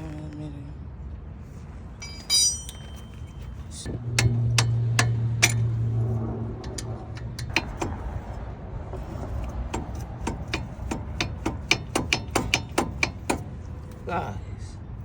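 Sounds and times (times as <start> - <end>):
ratchet wrench clicking: 6.6 - 8.0.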